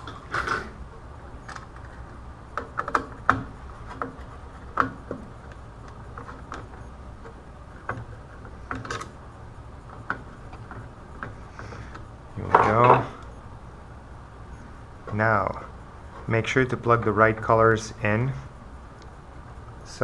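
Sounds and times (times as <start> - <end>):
low steady hum: 0.0 - 20.0.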